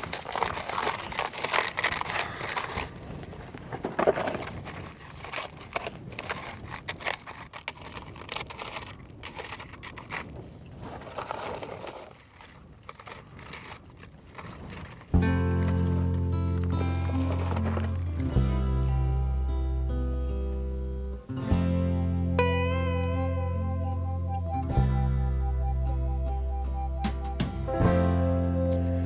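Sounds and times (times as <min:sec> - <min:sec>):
rustling and crinkling handling: 0:00.0 - 0:19.2.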